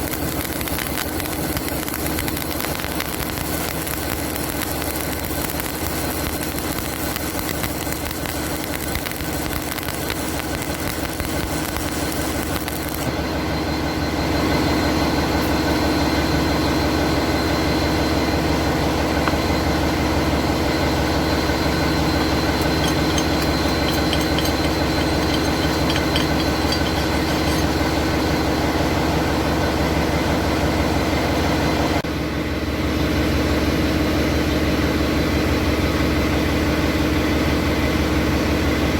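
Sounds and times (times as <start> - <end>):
arc welding crackling hiss: 0.0 - 13.1.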